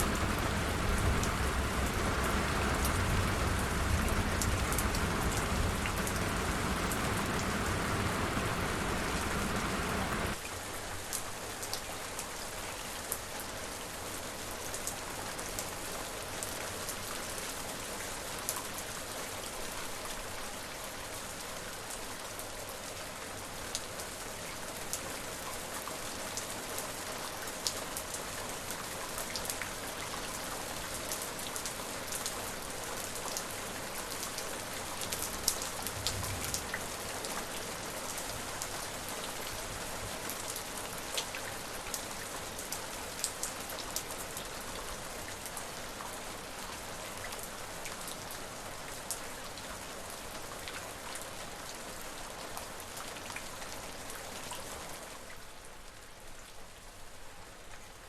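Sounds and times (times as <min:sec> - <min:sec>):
raindrops ticking: 0:00.0 - 0:10.4
steady rain falling: 0:00.0 - 0:58.0.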